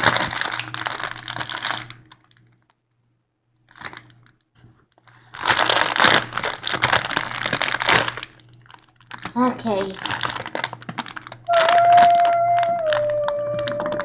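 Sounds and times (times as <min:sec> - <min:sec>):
packaging crinkling and rustling: 0:00.0 - 0:02.8, 0:03.7 - 0:14.0.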